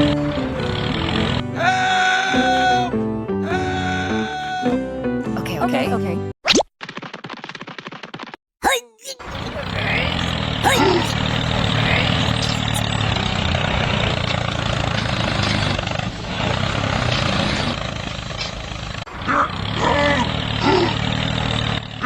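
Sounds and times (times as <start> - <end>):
engine humming: 0.0 - 1.5, 9.3 - 22.0.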